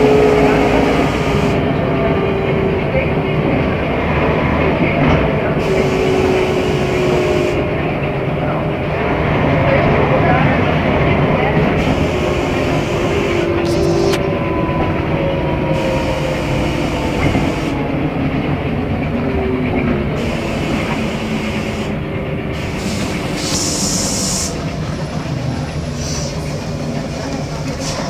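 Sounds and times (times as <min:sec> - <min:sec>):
bus engine drone: 0:00.0 - 0:28.0
road noise: 0:00.0 - 0:28.0.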